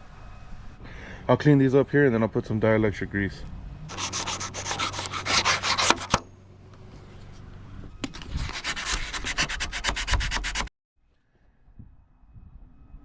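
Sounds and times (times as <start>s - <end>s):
sandpaper scratching metal terminals: 3.9s - 6.2s, 8.3s - 10.7s.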